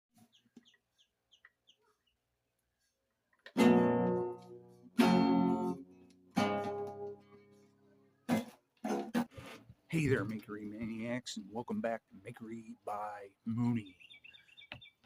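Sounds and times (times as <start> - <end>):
acoustic guitar strumming chords: 3.6 - 7.4.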